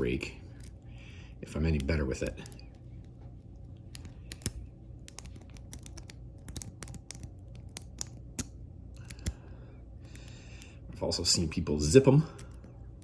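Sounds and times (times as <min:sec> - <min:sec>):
pick raking in padlock keyway: 0:00.0 - 0:09.4
lock pins clicking: 0:03.9 - 0:09.4.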